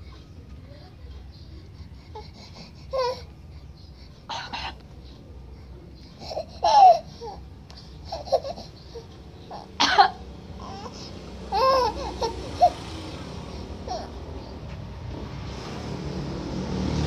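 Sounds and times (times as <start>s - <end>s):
baby laughing and babbling: 2.1s - 3.3s, 6.2s - 14.6s
woman coughing: 9.8s - 10.2s.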